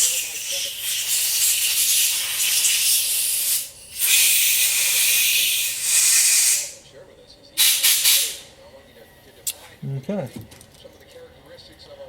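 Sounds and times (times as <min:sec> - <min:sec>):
compressed air hissing: 0:00.0 - 0:06.8, 0:07.6 - 0:08.5.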